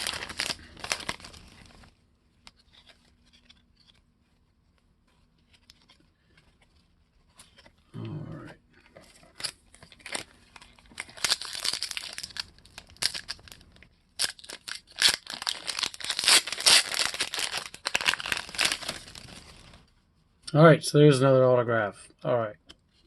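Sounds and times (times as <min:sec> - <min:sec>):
card pack wrapper tearing: 0:00.0 - 0:01.9, 0:09.2 - 0:19.8.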